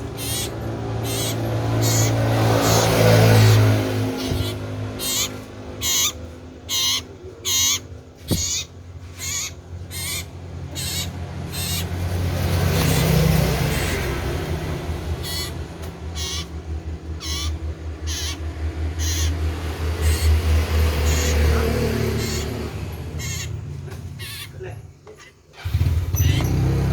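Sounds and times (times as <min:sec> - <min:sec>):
bird calling short notes: 0:04.2 - 0:11.9.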